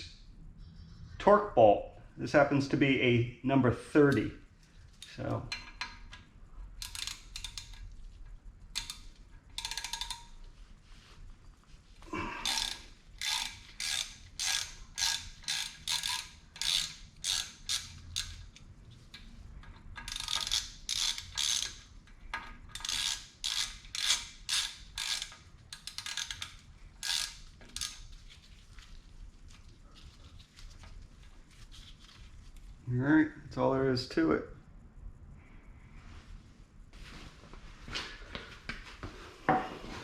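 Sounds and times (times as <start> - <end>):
ratchet clicking: 5.0 - 10.4, 12.4 - 28.5.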